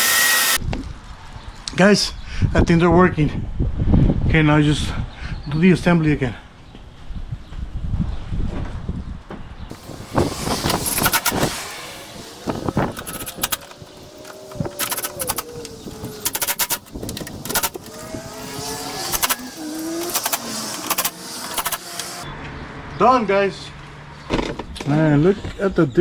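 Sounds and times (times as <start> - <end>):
faint engine hum: 9.7 - 22.3.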